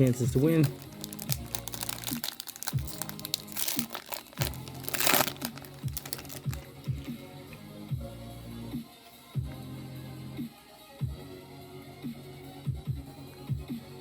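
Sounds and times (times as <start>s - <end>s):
electronic music with beat: 0.0s - 14.0s
foil wrapper crinkling: 0.2s - 7.1s.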